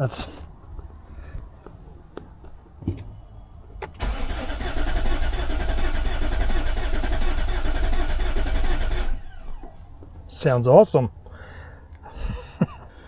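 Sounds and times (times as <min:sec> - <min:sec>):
car engine cranking: 0:03.2 - 0:10.0.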